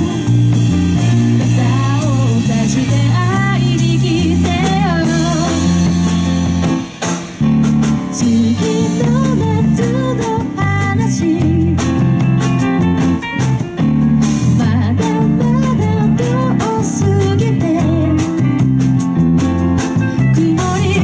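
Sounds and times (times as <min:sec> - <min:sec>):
person singing: 0:00.0 - 0:00.4, 0:01.4 - 0:05.9, 0:08.2 - 0:12.0, 0:14.6 - 0:18.6, 0:20.2 - 0:21.0
band playing: 0:00.0 - 0:21.0.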